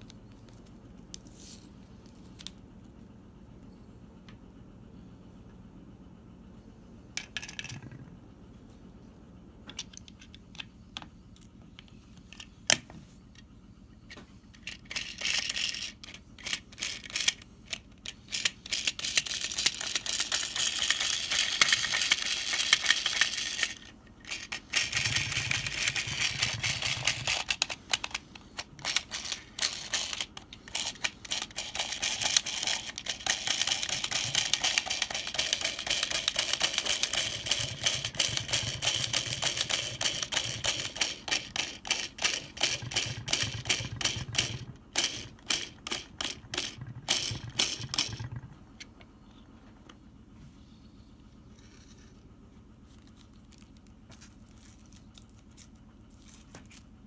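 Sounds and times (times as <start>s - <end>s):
plastic toy parts clicking and rattling: 7.2s - 8.0s, 9.7s - 10.7s, 11.4s - 12.8s, 14.5s - 48.5s.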